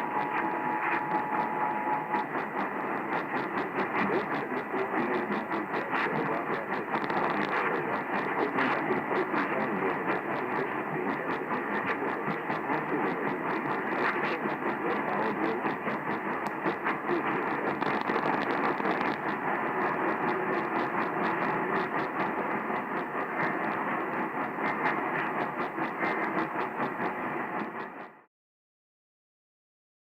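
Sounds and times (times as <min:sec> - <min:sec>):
radio static hiss: 0:00.0 - 0:28.3
crackling clicks: 0:05.9 - 0:10.5, 0:11.5 - 0:27.9.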